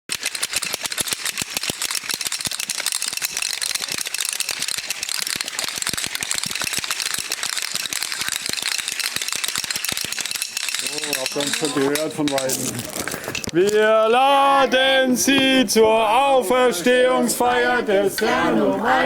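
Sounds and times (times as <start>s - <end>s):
wooden clappers clacking: 0.1s - 14.2s.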